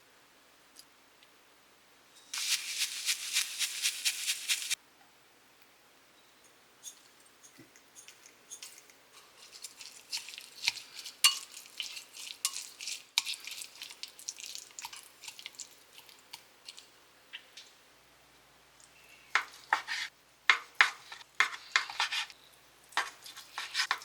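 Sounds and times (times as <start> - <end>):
food preparation clicks and taps: 22.9 - 24.0.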